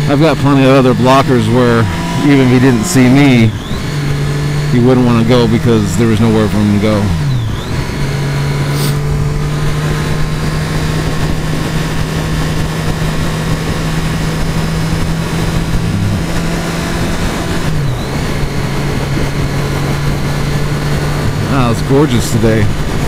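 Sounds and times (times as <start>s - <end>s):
motorcycle engine running: 0.0s - 23.0s
wind and road noise: 0.0s - 23.0s.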